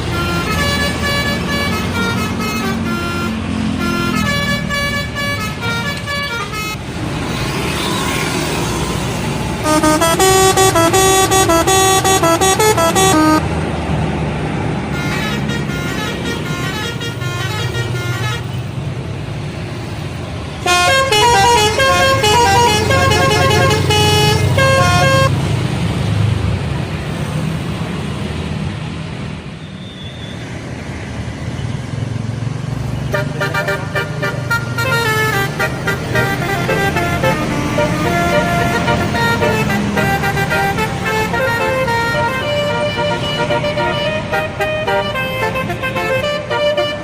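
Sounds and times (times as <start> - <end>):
musical bus horn tunes: 0.0 - 6.8, 9.6 - 13.6, 14.9 - 18.8, 20.6 - 25.4, 33.1 - 47.0
bus engine rumble: 0.0 - 47.0.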